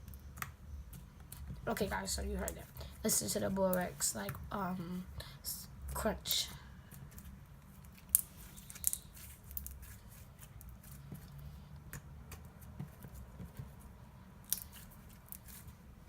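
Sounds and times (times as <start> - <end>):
slime clicking and crunching: 6.9 - 13.6, 14.4 - 15.8.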